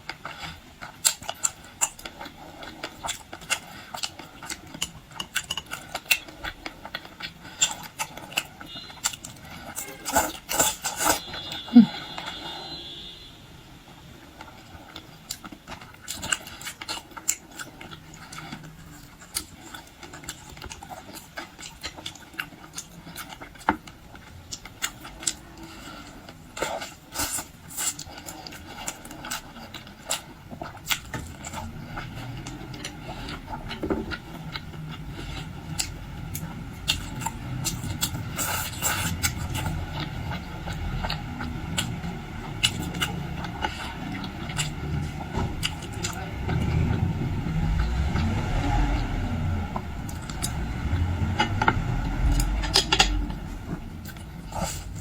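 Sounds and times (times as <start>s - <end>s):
wet chewing and crunching: 0.0s - 12.5s, 14.2s - 55.0s
low rumble: 30.9s - 55.0s.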